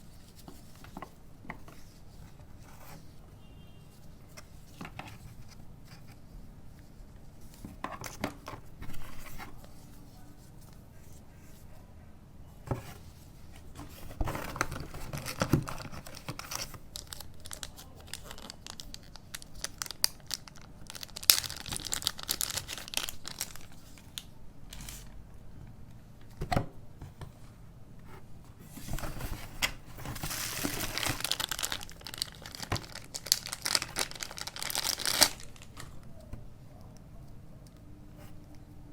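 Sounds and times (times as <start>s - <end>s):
wrapping crinkling and tearing: 14.4s - 25.1s, 28.8s - 36.0s.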